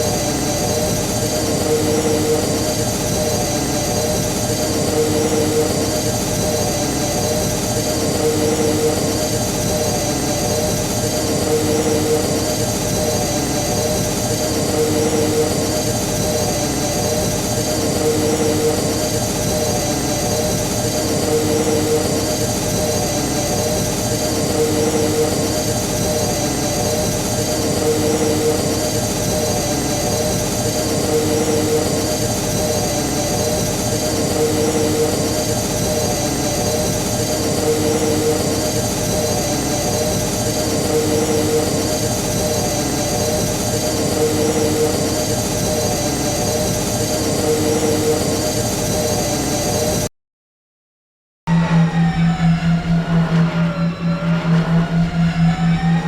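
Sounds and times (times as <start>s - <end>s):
spacecraft engine hum with throb: 0.0s - 50.1s, 51.5s - 56.0s.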